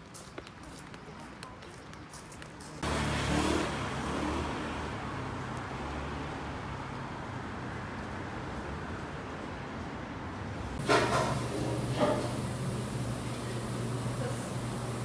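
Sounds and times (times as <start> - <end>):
road rumble: 2.8 - 9.5, 10.3 - 15.0
vehicle engine hum: 10.6 - 15.0.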